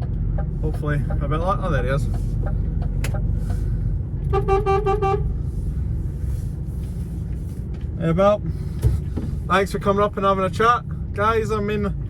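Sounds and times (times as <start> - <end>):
low engine rumble: 0.0 - 12.0
vehicle horn toot: 4.3 - 5.3.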